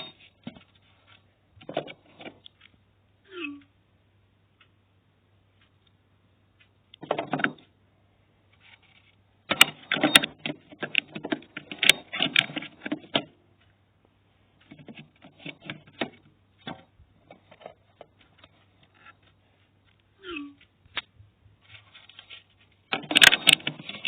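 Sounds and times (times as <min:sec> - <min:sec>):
plastic parts clicking and rattling: 0:00.0 - 0:02.8, 0:06.6 - 0:07.8, 0:08.5 - 0:13.8, 0:14.6 - 0:20.0, 0:20.6 - 0:24.0.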